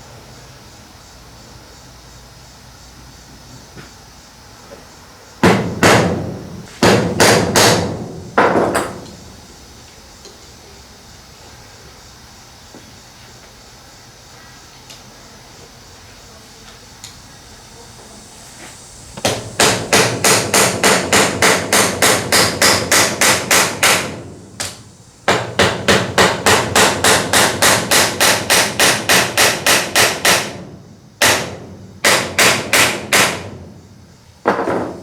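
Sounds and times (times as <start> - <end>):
hammer striking rivets: 5.4 - 9.2, 19.2 - 33.7, 34.4 - 35.0.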